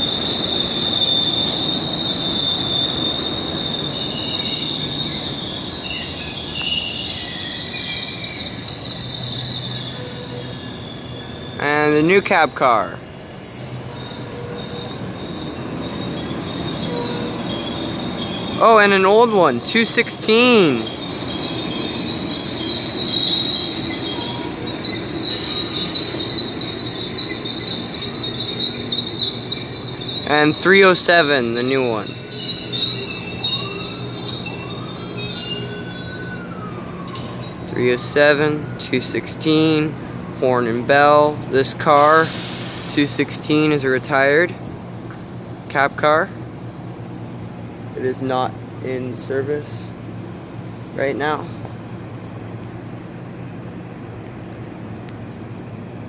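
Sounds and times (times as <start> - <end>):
rumble of wheels on rail: 0.0 - 56.0
train wheels squealing: 0.0 - 56.0
hiss: 42.0 - 43.3.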